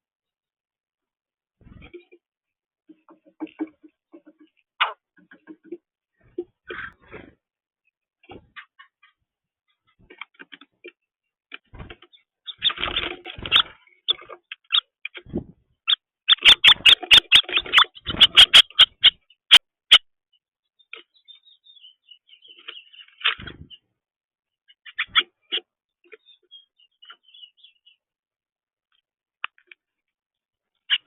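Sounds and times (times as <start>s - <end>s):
small bird chirping: 7.8s - 28.2s.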